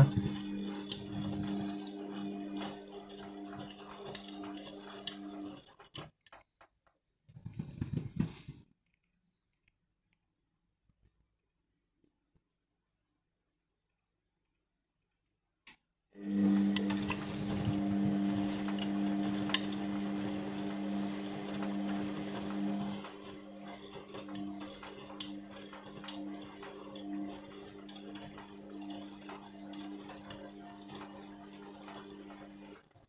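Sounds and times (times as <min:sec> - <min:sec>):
washing machine humming: 0:00.0 - 0:05.9, 0:16.2 - 0:33.0.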